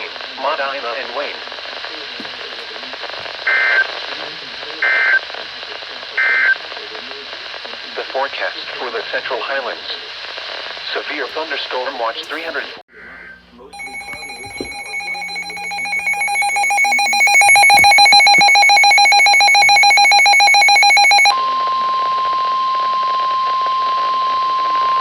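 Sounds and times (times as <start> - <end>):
rapid pulsed electronic beeping: 13.8 - 21.3
steady alarm tone: 13.8 - 25.0.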